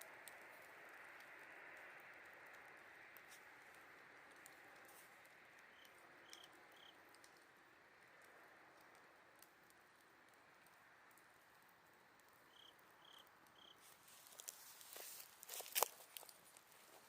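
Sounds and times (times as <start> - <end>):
campfire crackling: 0.0 - 17.0
insect chorus: 5.7 - 7.0, 12.0 - 15.9
short insect chirps: 12.5 - 13.8.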